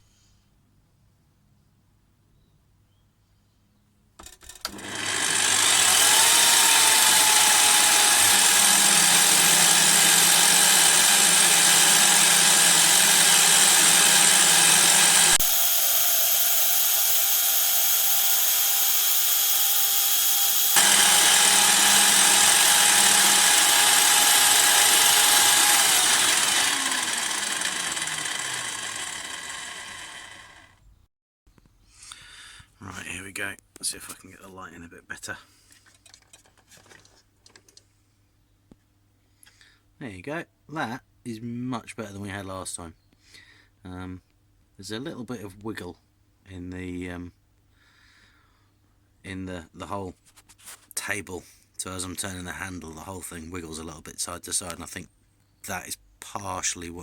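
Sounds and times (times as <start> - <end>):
motor winding down: 4.6 - 30.8
drill motor running: 4.7 - 30.8.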